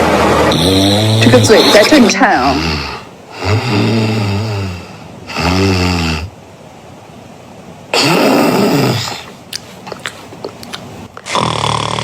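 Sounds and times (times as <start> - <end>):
person snoring: 0.5 - 6.3, 8.0 - 9.3, 11.3 - 12.0.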